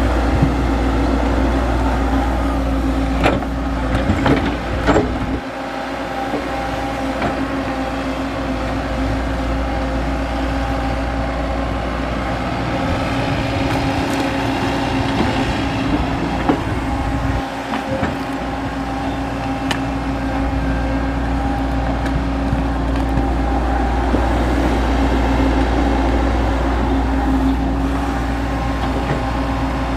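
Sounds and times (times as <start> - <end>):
excavator diesel engine running: 0.0 - 29.9.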